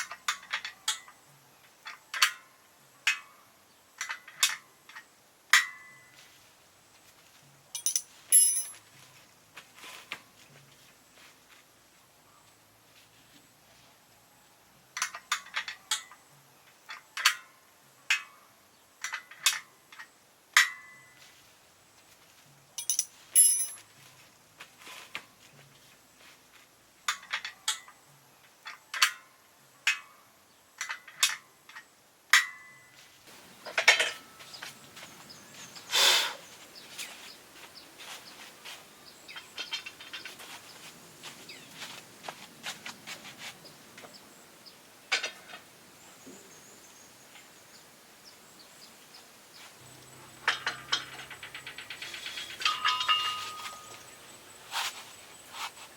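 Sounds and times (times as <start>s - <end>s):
rustling scraping noise: 6.1s - 11.7s, 21.2s - 26.7s, 32.9s - 44.2s, 49.6s - 55.9s
clinks and knocks: 7.8s - 8.9s, 22.8s - 23.9s, 33.6s - 34.6s, 50.0s - 54.2s.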